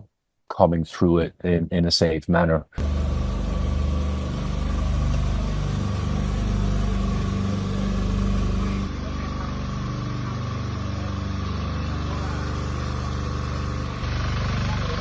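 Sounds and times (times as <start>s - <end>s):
engine running: 2.8s - 15.0s.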